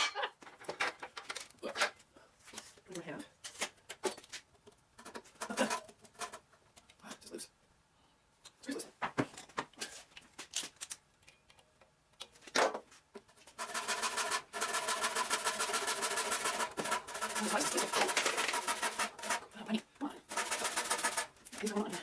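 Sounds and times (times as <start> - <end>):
hacksaw cutting wood: 5.0 - 6.4, 13.5 - 19.6, 20.2 - 22.0.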